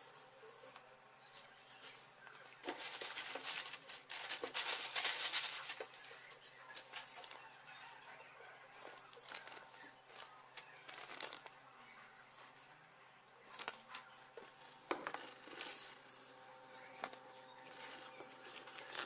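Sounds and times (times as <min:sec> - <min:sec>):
packaging rustling: 0:02.5 - 0:07.4, 0:10.9 - 0:11.5, 0:17.0 - 0:19.0.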